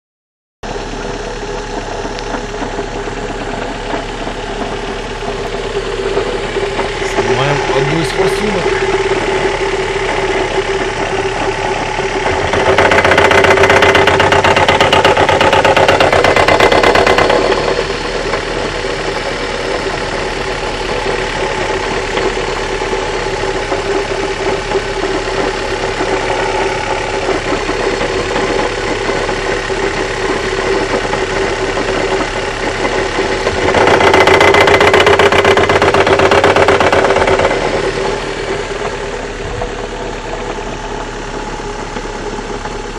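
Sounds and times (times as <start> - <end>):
car engine idling: 0.6 - 42.9
rapid rattling knock: 12.3 - 17.5, 33.5 - 37.6.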